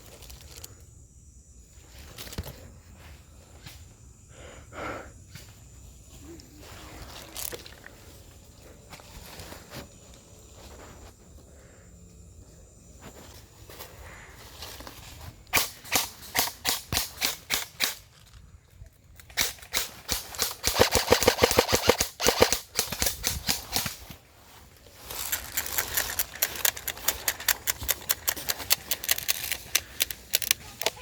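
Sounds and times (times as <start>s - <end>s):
airsoft guns firing: 15.6s - 18.0s, 19.4s - 24.0s.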